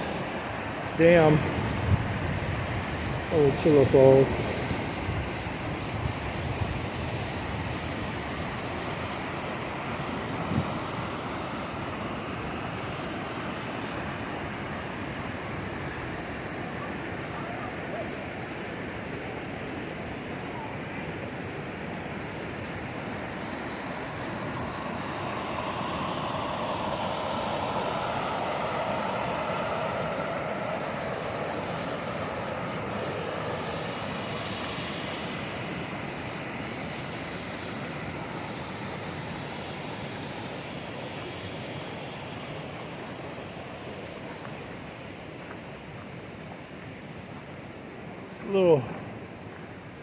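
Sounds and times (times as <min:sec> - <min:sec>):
water rushing over a dam: 0:00.0 - 0:50.0.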